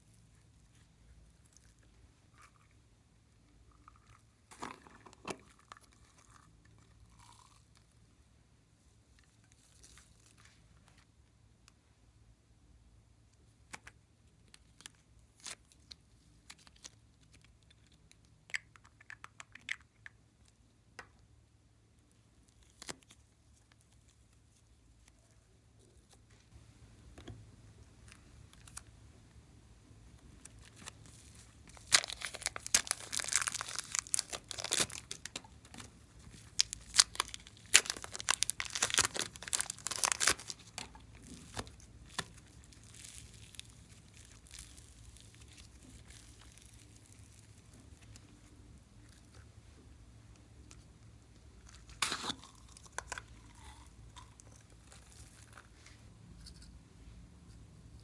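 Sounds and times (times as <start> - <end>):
slime crackling and popping: 30.4 - 48.3.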